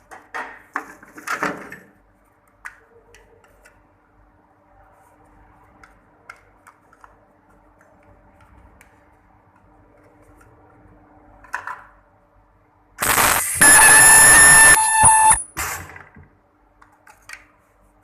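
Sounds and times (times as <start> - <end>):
faint clicks and taps: 5.7 - 10.6.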